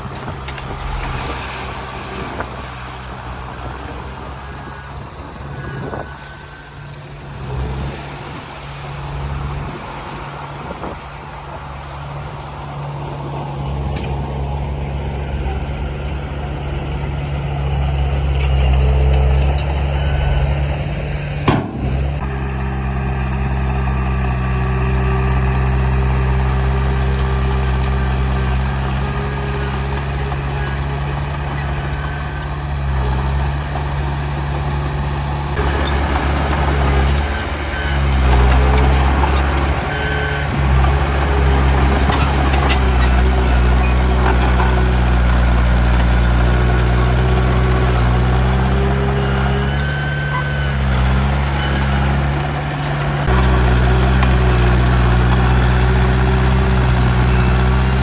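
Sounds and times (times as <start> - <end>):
heavy diesel machinery engine drone: 0.0 - 58.0
sharp knock: 21.5 - 22.2.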